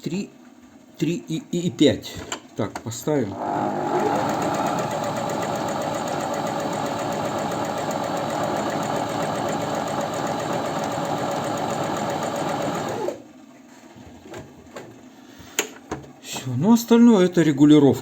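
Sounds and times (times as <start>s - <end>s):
sewing machine running: 3.3s - 13.2s.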